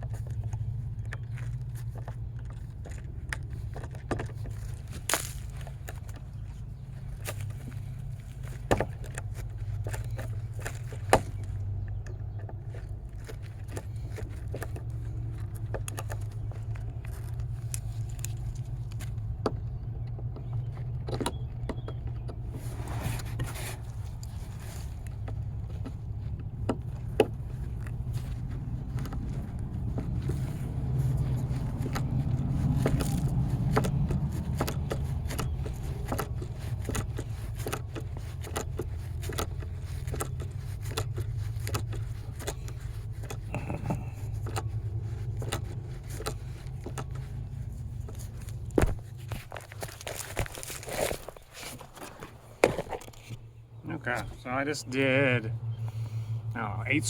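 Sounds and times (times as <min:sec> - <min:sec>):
scraping: 0:22.1 - 0:57.0
steady low rumble: 0:22.3 - 0:51.4, 0:52.4 - 0:57.0.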